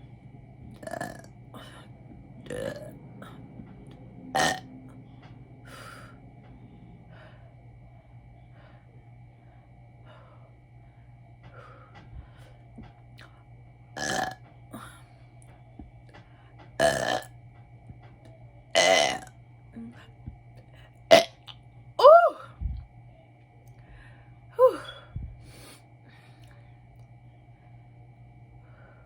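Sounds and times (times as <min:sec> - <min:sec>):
woman burping: 0:00.8 - 0:01.3, 0:04.4 - 0:04.6, 0:14.0 - 0:14.9, 0:18.8 - 0:19.3, 0:21.1 - 0:22.4.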